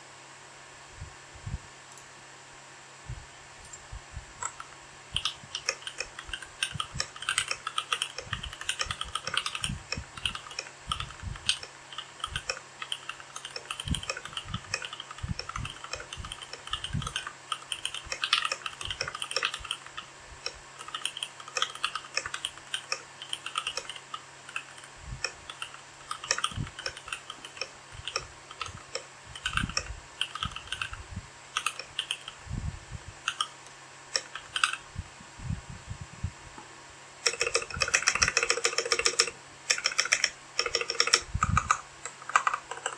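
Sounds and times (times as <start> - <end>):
mechanical keyboard key clicks: 4.4 - 31.0, 34.2 - 34.8, 37.2 - 42.9.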